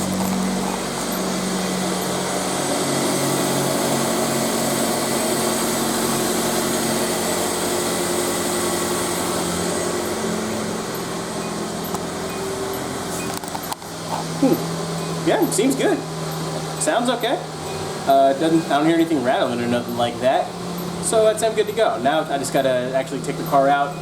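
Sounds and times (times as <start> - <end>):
car engine idling: 0.0 - 2.6.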